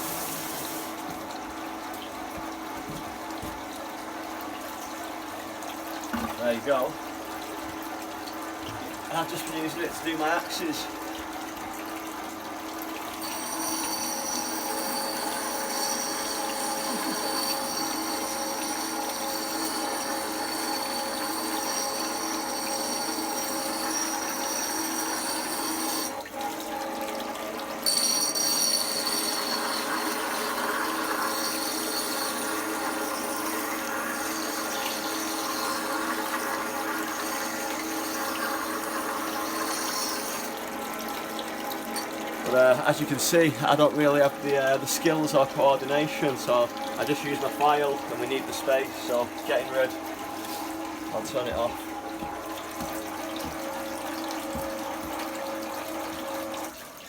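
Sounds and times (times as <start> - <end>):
grinding wheel motor humming: 13.2 - 26.2, 27.8 - 40.6.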